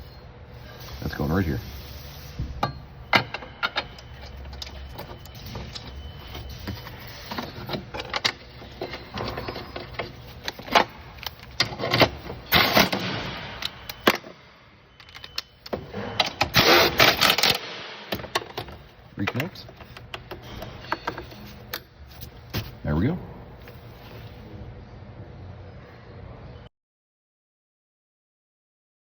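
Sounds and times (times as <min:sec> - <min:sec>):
cordless power tool driving bolts: 0:07.4 - 0:14.2, 0:15.2 - 0:18.8.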